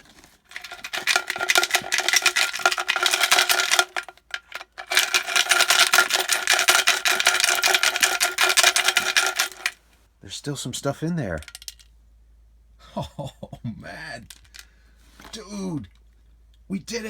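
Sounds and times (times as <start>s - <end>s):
coins jingling and clinking: 0.6s - 9.8s.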